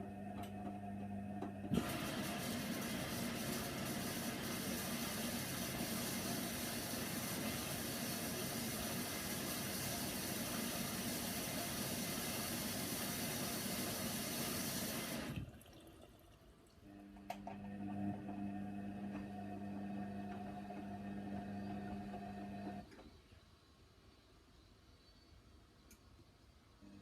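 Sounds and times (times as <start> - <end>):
water rushing into washer: 1.2 - 22.8.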